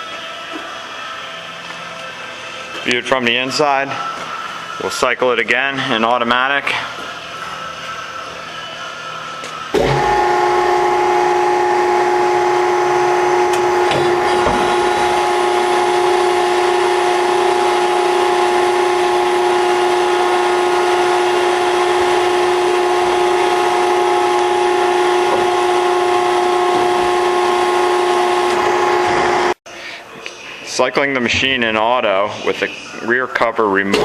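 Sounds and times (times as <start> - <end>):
hydraulic pump motor whine: 9.7 - 29.6.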